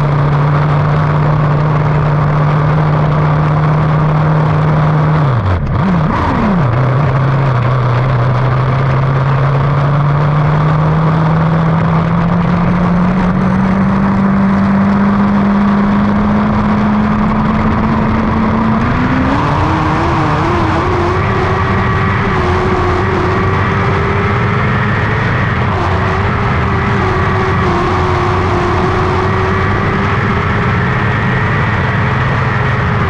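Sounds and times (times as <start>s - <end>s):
race car engine running hard: 0.0s - 33.0s.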